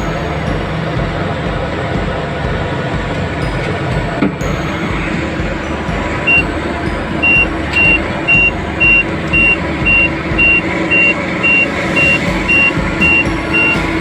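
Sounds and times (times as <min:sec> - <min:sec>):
diesel engines running: 0:00.0 - 0:14.0
reversing alarm beeping: 0:03.7 - 0:14.0.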